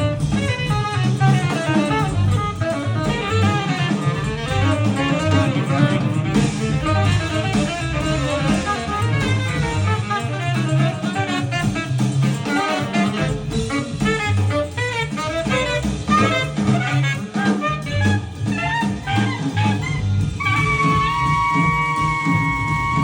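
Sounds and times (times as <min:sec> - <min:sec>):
jazz music with bass line: 0:00.0 - 0:23.0.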